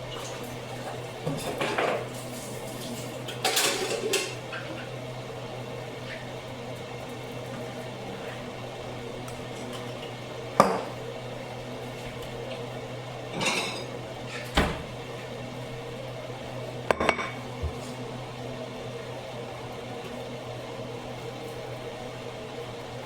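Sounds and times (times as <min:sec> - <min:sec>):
dishes and utensils clattering: 0:01.2 - 0:02.1, 0:02.8 - 0:04.9, 0:13.3 - 0:14.6.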